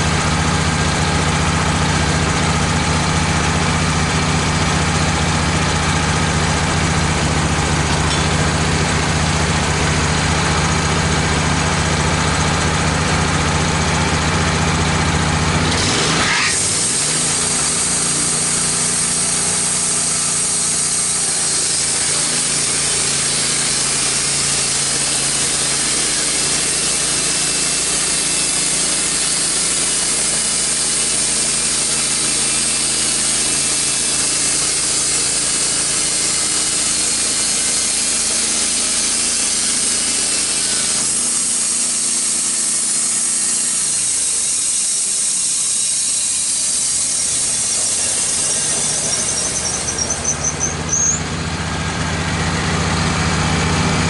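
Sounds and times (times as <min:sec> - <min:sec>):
sawmill engine humming: 0:00.0 - 0:54.0
band blade sawing through log: 0:15.7 - 0:51.3.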